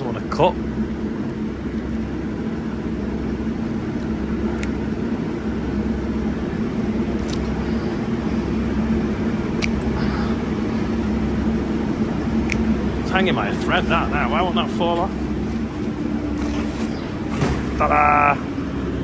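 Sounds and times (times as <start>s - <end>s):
engine running: 0.0s - 19.0s
hand snips snapping shut: 9.6s - 10.0s, 12.4s - 12.8s.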